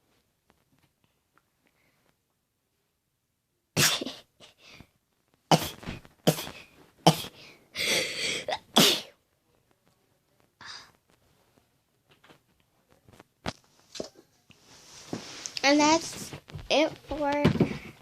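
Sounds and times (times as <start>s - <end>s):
person sneezing: 3.8s - 4.6s, 5.5s - 9.1s.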